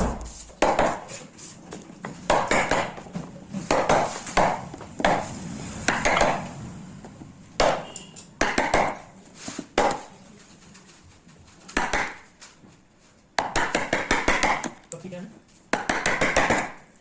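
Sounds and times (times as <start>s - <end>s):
hand tool knocking on wood: 0.0s - 1.1s, 3.7s - 5.2s, 15.7s - 16.8s.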